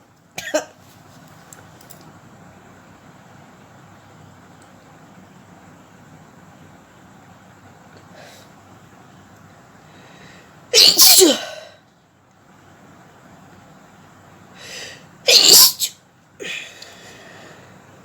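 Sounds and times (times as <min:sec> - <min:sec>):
woman sneezing: 0:10.8 - 0:11.8, 0:15.3 - 0:16.7.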